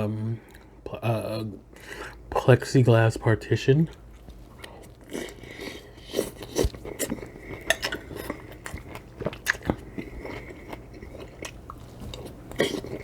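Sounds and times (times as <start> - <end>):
biting and chewing: 3.9 - 13.0.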